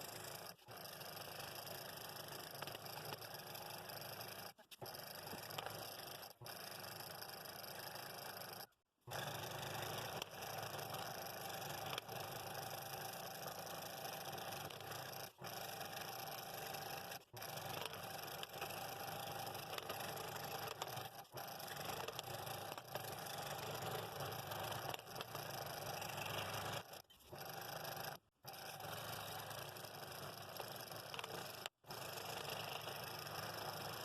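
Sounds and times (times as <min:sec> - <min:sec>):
scroll saw cutting wood: 0:00.0 - 0:34.0.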